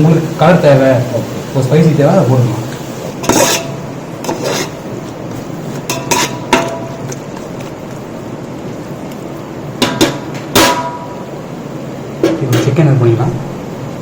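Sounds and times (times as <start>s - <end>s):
steady hiss: 0.0s - 14.0s
metal ladle clanking on pot: 5.9s - 7.2s, 9.8s - 11.1s.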